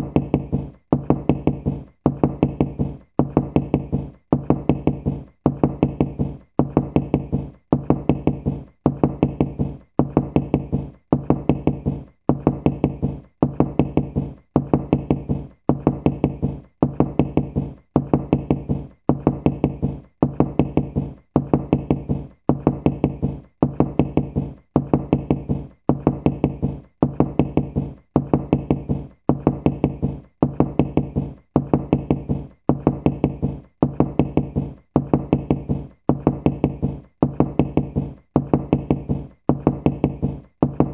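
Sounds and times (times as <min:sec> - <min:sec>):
hollow knocking: 0:00.0 - 0:40.9.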